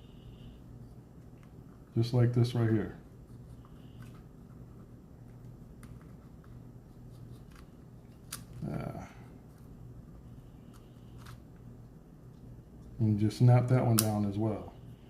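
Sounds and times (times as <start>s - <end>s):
faint clicks and taps: 5.2s - 6.6s.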